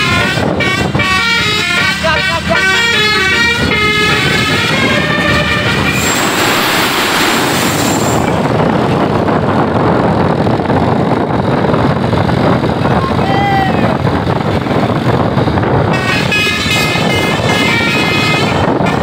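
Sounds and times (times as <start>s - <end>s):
musical bus horn melody: 0.0s - 6.2s, 15.9s - 19.0s
bus rushing past: 2.8s - 18.8s.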